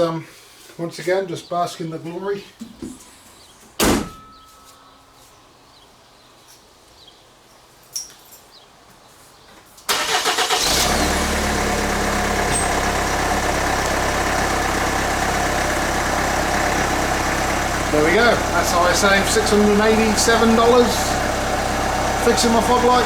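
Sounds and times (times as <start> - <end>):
car engine starting and idling: 9.9 - 23.0.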